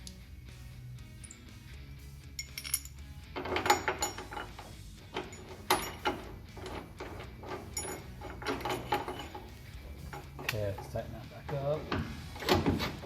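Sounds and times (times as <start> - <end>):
metal tools clinking and rattling: 1.2 - 1.5, 2.4 - 11.6.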